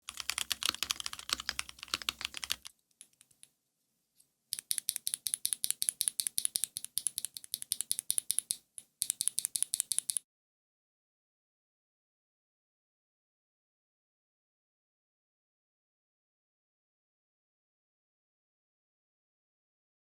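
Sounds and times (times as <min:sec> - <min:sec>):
mechanical keyboard typing: 0:00.1 - 0:03.4, 0:04.6 - 0:10.2.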